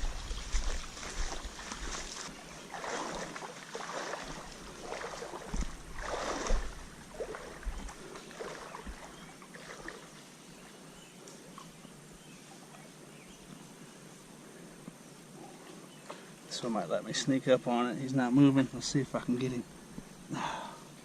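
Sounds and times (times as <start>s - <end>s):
stream washing: 0.0s - 10.3s
creek water splashing: 0.0s - 13.6s.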